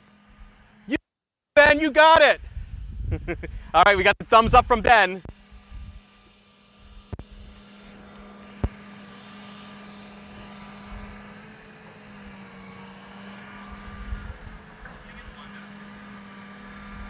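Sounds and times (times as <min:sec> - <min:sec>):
excavator engine humming: 0:00.0 - 0:01.0, 0:01.6 - 0:17.0
low rumbling: 0:02.4 - 0:06.0.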